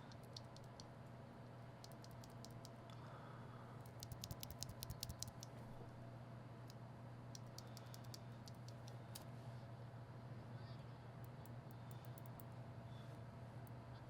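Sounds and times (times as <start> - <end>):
low steady hum: 0.0 - 14.0
keyboard switches clacking: 3.9 - 5.5.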